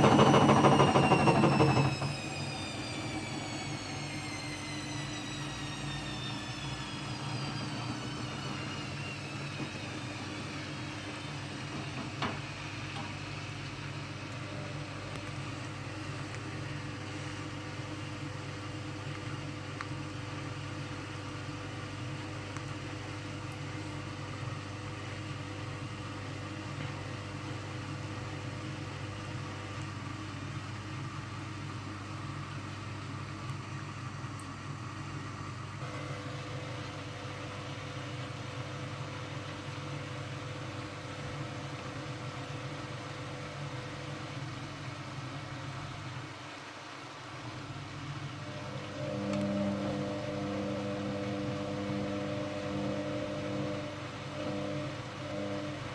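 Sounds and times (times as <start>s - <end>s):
high whine falling in pitch: 0.0s - 13.4s, 48.1s - 55.9s
washing machine motor hum: 0.0s - 55.9s.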